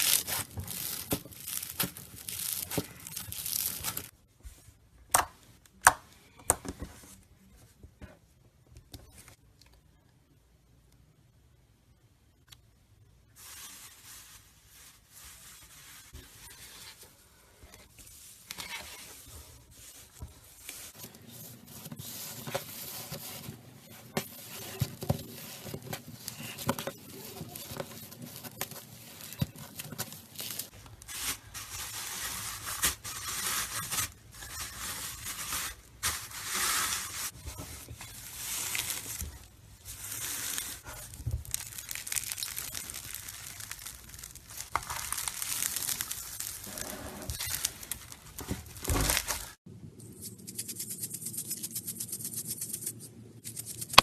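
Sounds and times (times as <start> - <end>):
slime squishing and crackling: 0.0 - 4.1, 38.0 - 49.6.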